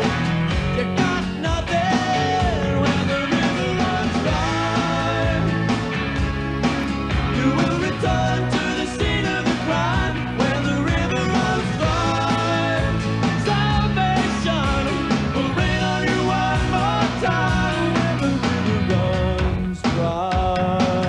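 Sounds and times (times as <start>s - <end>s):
rock song with singing: 0.0s - 21.0s.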